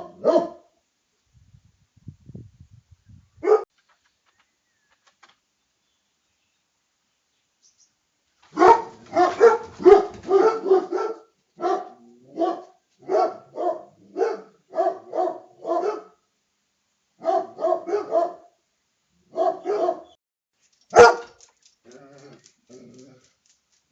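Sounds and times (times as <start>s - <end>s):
dog barking: 0.0s - 0.7s, 3.4s - 3.7s, 8.5s - 16.2s, 17.2s - 18.6s, 19.3s - 20.2s, 20.9s - 21.4s.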